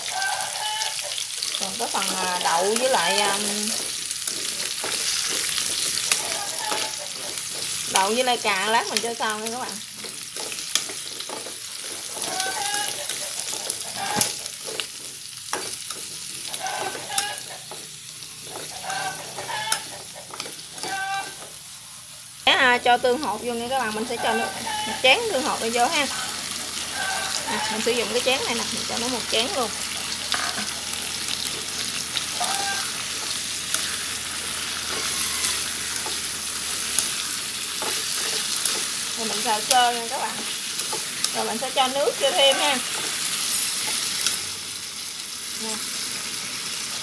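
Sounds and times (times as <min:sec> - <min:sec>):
vegetables sizzling in oil: 0:00.0 - 0:47.0
spatula scraping a pan: 0:00.2 - 0:21.6, 0:23.8 - 0:44.4
utensil clicking against pan: 0:02.7 - 0:17.9.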